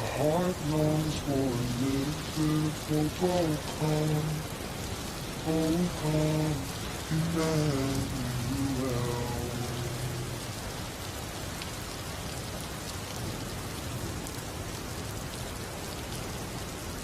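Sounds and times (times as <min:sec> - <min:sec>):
held sung note: 0:00.0 - 0:10.7
steady rain falling: 0:00.0 - 0:17.0.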